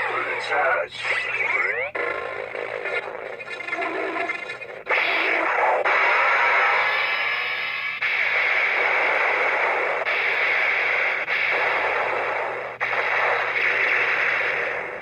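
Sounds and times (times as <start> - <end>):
harsh electronic toy sound effects: 0.0 - 15.0.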